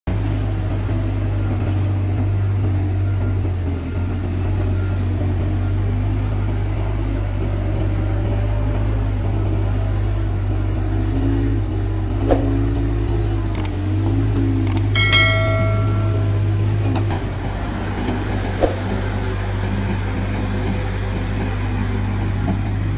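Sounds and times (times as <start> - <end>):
diesel engine droning: 0.0 - 22.9
clicks: 13.5 - 13.8, 14.6 - 17.2.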